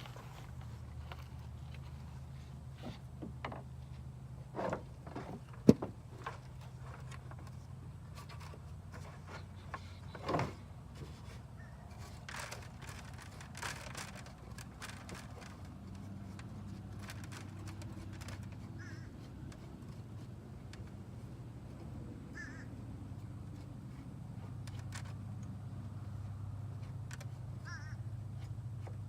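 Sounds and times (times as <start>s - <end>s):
clicks and knocks handling parts: 0.0s - 29.0s.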